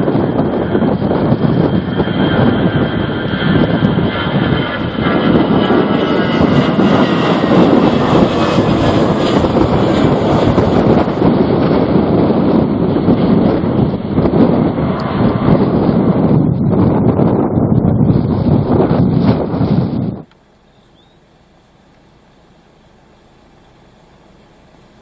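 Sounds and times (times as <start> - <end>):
airliner engines rushing and whining: 0.0 - 25.0
wind buffeting microphone: 0.0 - 25.0.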